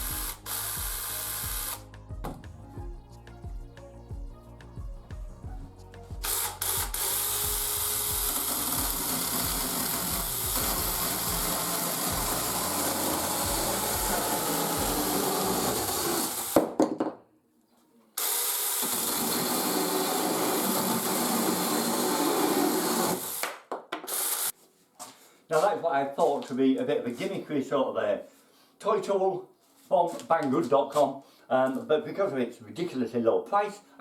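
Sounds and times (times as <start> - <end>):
chainsaw cutting wood: 0.0 - 1.9, 6.2 - 16.8, 18.2 - 24.5.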